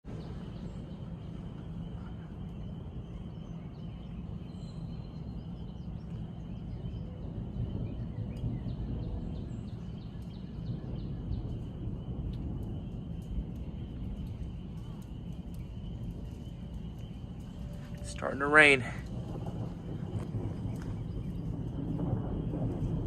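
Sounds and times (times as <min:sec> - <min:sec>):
wind rumble on microphone: 0:00.0 - 0:23.0
faint bird chirps: 0:00.1 - 0:11.7.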